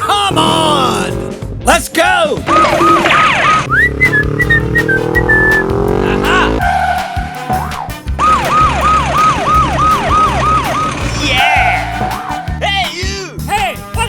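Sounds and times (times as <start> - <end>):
rising hum: 2.4 - 12.5
falling beeping notes: 2.5 - 12.5
siren rising and falling: 2.5 - 12.5.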